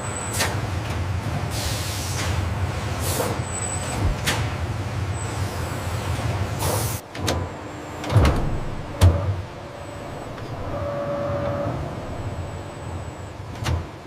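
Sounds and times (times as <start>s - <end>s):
machinery low hum: 3.8s - 6.5s, 7.4s - 14.0s
machine clunks: 3.9s - 4.6s, 7.2s - 9.3s.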